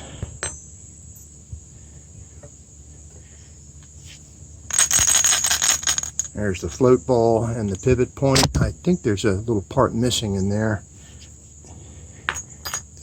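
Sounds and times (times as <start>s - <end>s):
steady high whine: 0.0s - 13.0s
metal parts clicking: 4.7s - 6.4s
metal parts clinking rattle: 4.7s - 6.8s, 12.3s - 13.0s.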